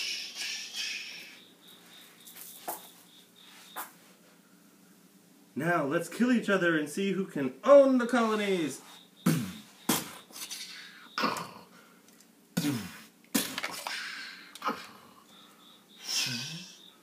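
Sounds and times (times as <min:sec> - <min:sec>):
man making mouth sound effects: 0:00.0 - 0:01.4, 0:09.2 - 0:11.7, 0:12.6 - 0:15.0, 0:16.0 - 0:16.8.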